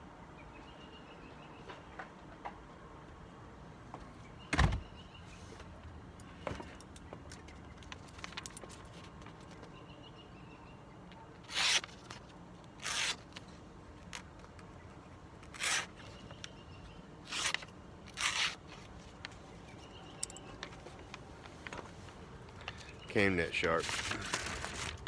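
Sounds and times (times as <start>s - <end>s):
knife blade slicing paper: 11.4s - 13.4s, 15.4s - 16.1s, 17.2s - 18.8s.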